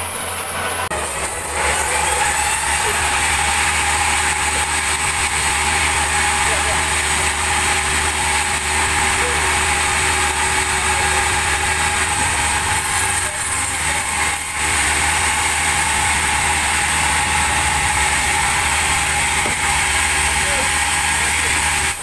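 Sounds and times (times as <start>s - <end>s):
loud rushing saw: 0.0s - 22.0s
low engine hum: 0.0s - 22.0s.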